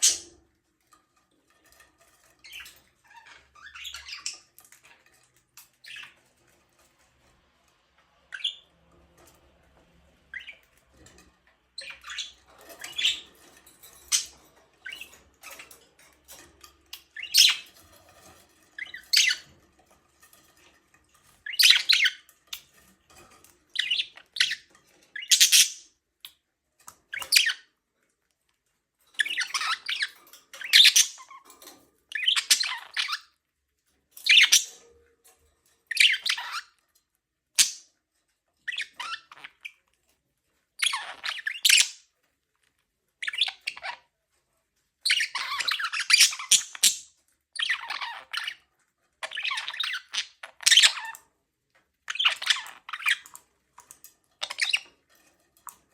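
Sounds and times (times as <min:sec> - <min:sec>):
budgerigars chirping and chattering: 0:00.0 - 0:00.5, 0:01.5 - 0:06.9, 0:08.3 - 0:09.4, 0:10.2 - 0:26.4, 0:27.1 - 0:27.7, 0:29.1 - 0:33.4, 0:34.2 - 0:34.9, 0:35.9 - 0:36.8, 0:37.6 - 0:37.9, 0:38.6 - 0:39.9, 0:40.8 - 0:42.1, 0:43.2 - 0:44.1, 0:45.0 - 0:51.2, 0:52.0 - 0:55.9.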